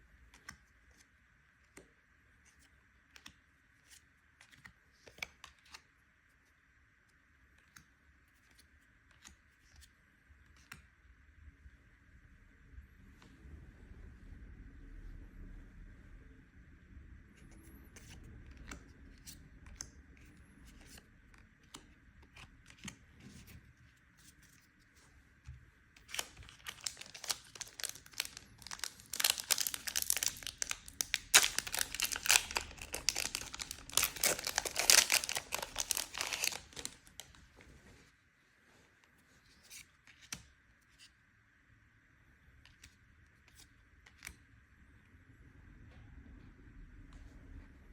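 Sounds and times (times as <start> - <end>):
foil wrapper tearing and crinkling: 26.1 - 37.3.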